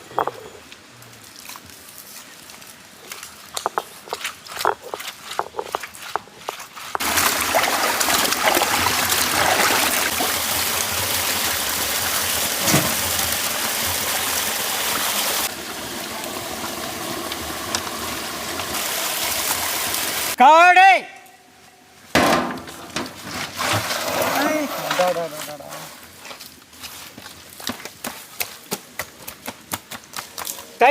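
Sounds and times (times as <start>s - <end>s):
running water splashing: 1.4s - 20.4s.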